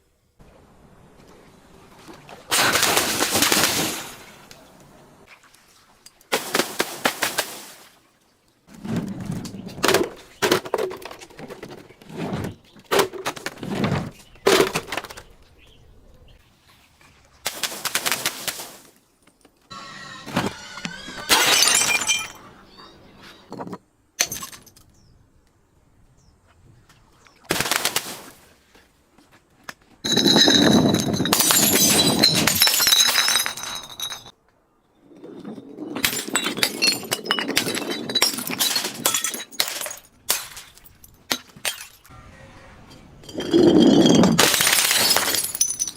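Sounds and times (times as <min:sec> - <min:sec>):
glass bottles shattering: 0:21.2 - 0:22.4, 0:24.2 - 0:24.8, 0:30.1 - 0:34.3, 0:35.9 - 0:42.1, 0:43.2 - 0:45.9.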